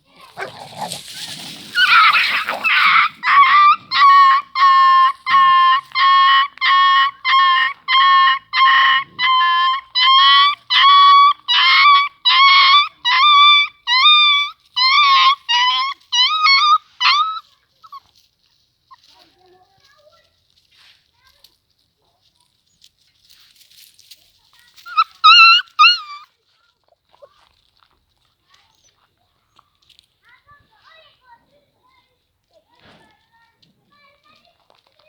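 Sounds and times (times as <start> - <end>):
puppy whining cries: 0.4 - 18.1, 24.8 - 26.3.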